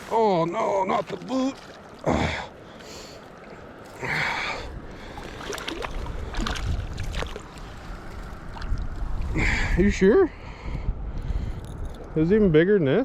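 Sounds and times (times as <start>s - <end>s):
water splashing: 0.0s - 9.7s
wind rumbling on microphone: 4.5s - 13.0s.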